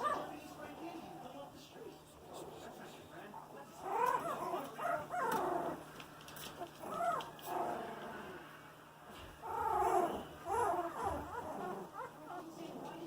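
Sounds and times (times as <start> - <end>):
puppies whimpering and squealing: 3.8 - 5.8, 6.6 - 8.1, 9.4 - 13.0.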